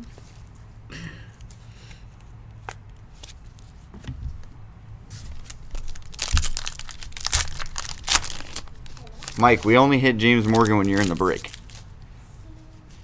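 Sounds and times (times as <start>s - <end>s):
wrapper crinkling and tearing: 5.3s - 11.9s.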